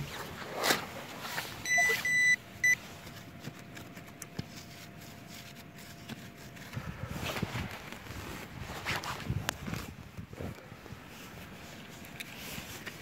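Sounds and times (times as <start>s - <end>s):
metal detector high beeps: 1.6s - 2.8s
metal detector steady tone: 1.6s - 2.9s.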